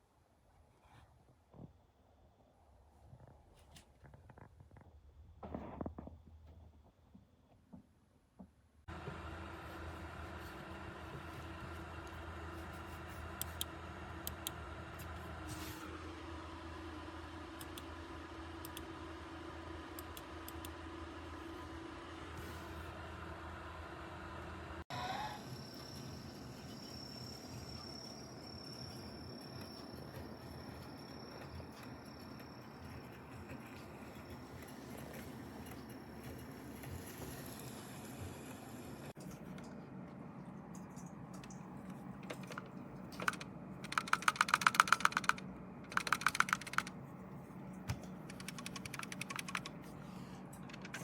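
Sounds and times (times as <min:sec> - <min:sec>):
computer key clicks: 0:43.2 - 0:46.9, 0:48.3 - 0:49.7.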